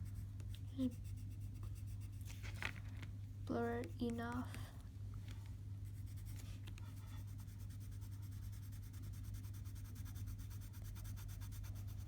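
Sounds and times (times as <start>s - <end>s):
pencil shading on paper: 0.0s - 2.3s, 5.8s - 12.0s
steady low hum: 0.0s - 12.0s.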